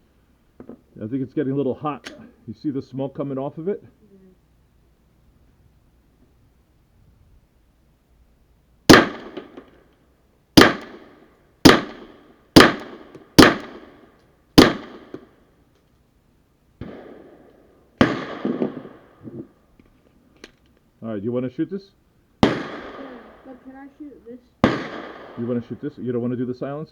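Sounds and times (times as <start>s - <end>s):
suppressed pistol shots: 8.9s - 9.8s, 10.6s - 14.0s, 14.6s - 15.3s, 16.8s - 19.2s, 22.4s - 23.5s, 24.6s - 25.7s.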